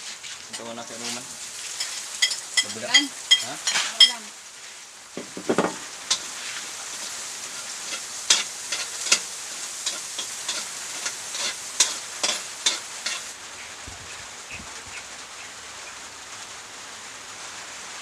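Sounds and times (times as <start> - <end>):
food sizzling in a pan: 0.0 - 18.0
utensil clinking and scraping pan: 1.8 - 4.2, 5.2 - 13.4.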